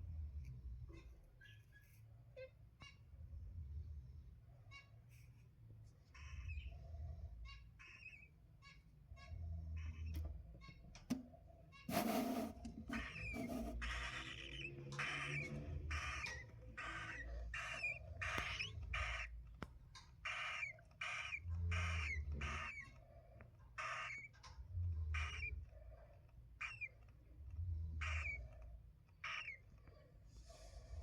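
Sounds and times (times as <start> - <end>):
cockatiel chicks raspy cries: 6.1 - 10.8, 12.8 - 31.0.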